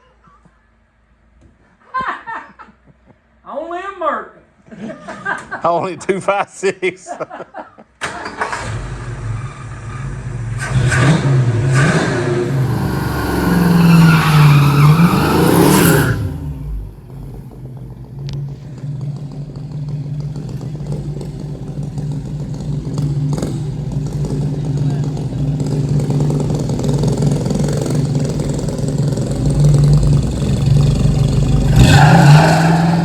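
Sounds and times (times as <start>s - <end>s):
car engine revving and idling: 8.6s - 33.0s.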